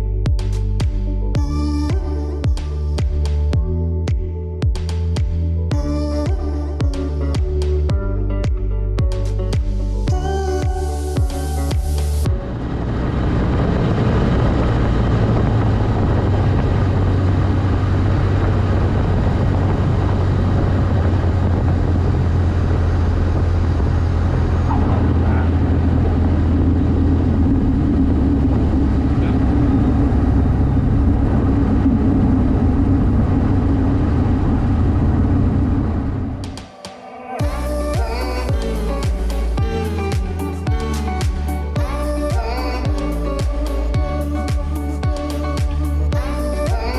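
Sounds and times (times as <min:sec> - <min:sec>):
airplane engine and propeller drone: 0:12.4 - 0:36.6.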